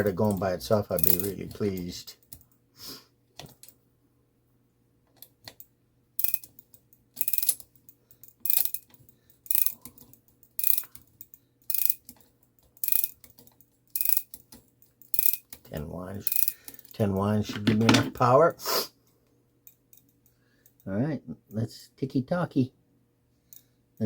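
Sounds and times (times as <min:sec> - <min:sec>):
clock ratchet clicking while wound: 0:00.0 - 0:02.5, 0:05.2 - 0:17.0.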